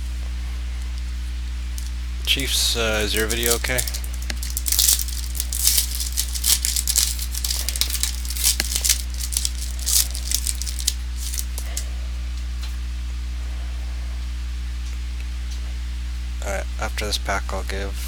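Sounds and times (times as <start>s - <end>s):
low electrical hum: 0.0s - 18.0s
trading cards and wrapper crinkling: 1.8s - 11.8s.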